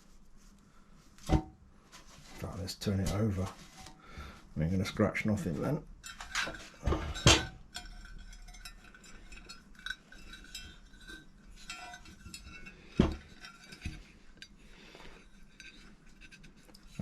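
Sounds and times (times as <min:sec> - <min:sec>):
metal parts clinking and rattling: 0:06.0 - 0:14.0.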